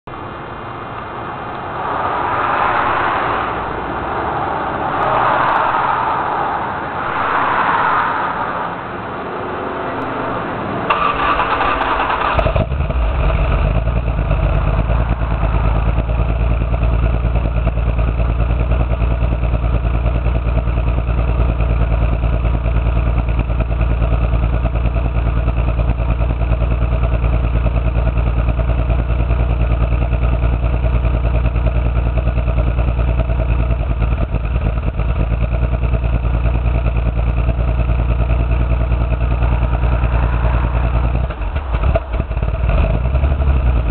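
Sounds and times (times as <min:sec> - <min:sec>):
misfiring car engine idling: 0:10.9 - 0:43.9.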